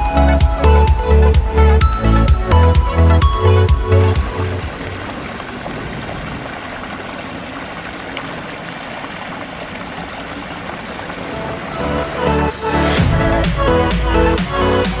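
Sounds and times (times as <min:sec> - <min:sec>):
waterfall splashing and rushing: 0:03.2 - 0:15.0.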